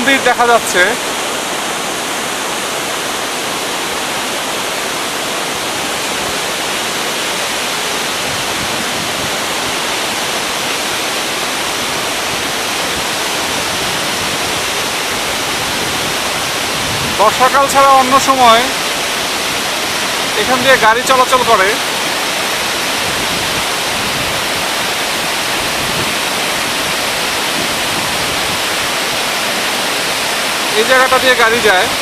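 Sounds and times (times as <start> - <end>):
waterfall rushing: 0.0 - 32.0.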